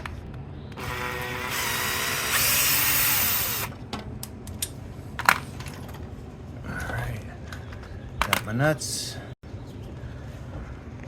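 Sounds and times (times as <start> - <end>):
power drill driving a bolt: 0.8 - 3.8.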